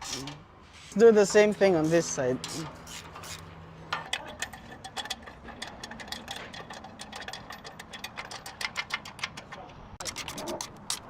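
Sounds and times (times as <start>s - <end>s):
ratchet wrench clicking: 4.4s - 11.0s.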